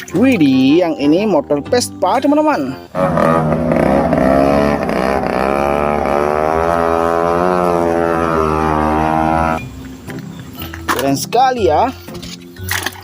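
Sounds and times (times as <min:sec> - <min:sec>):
motor scooter engine running: 0:03.0 - 0:09.6.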